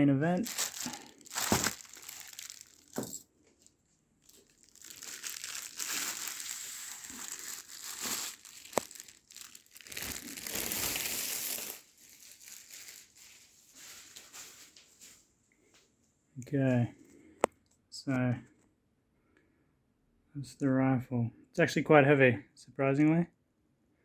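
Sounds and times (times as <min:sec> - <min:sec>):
packaging crinkling and rustling: 0:00.4 - 0:15.2.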